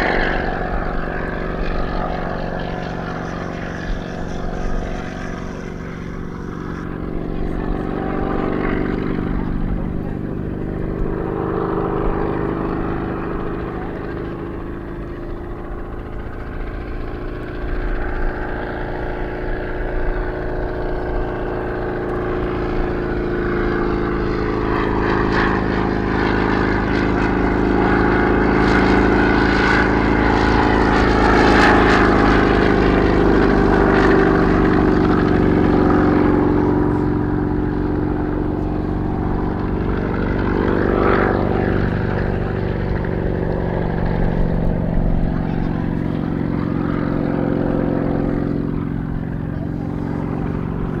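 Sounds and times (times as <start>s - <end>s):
helicopter engine and rotor: 0.0s - 51.0s.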